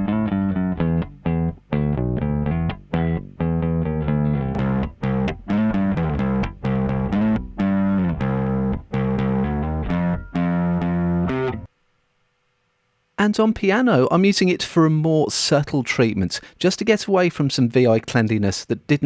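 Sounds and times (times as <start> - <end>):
distorted bass guitar: 0.0 - 11.7.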